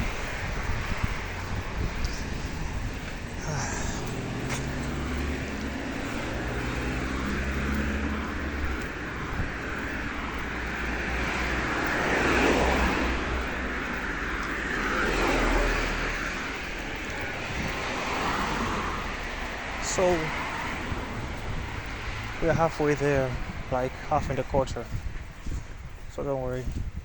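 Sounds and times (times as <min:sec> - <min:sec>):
engine running close by: 0:00.0 - 0:19.2
vehicles passing: 0:00.0 - 0:27.0.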